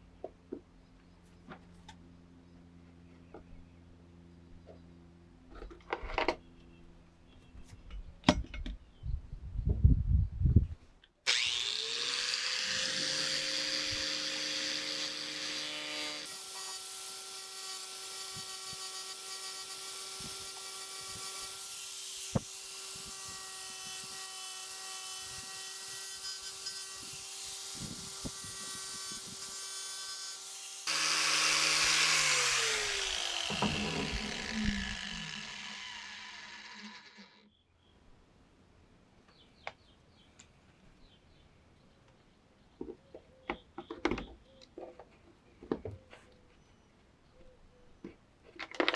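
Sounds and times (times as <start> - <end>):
electric power tool running: 11.3 - 37.5.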